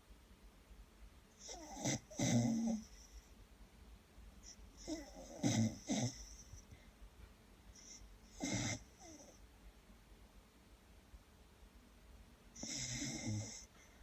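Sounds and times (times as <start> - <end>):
dog snoring: 1.4 - 3.3, 4.4 - 6.6, 7.7 - 9.4, 12.6 - 14.0.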